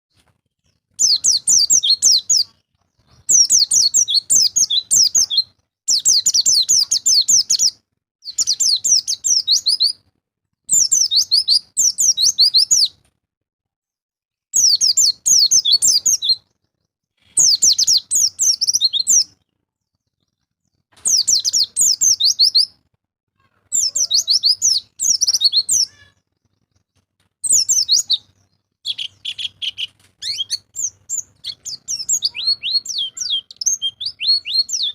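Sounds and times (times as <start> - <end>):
bird singing high chirping notes: 1.0 - 2.5, 3.1 - 10.0, 10.7 - 13.0, 14.6 - 16.4, 17.4 - 19.3, 21.1 - 22.7, 23.8 - 26.1, 27.4 - 34.9.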